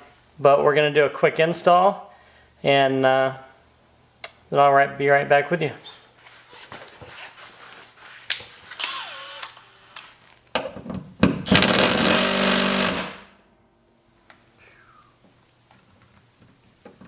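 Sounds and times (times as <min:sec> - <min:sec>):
impact driver hammering: 0:11.5 - 0:13.2.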